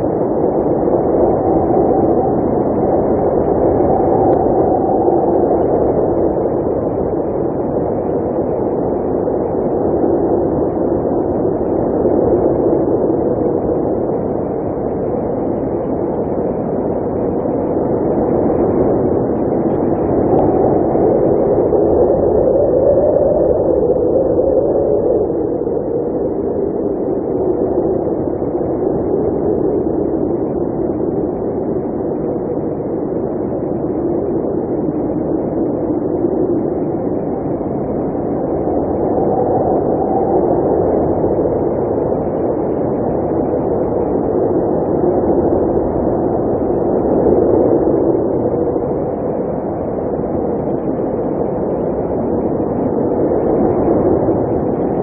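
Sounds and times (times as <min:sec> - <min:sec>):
blizzard wind blowing: 0:00.0 - 0:55.0.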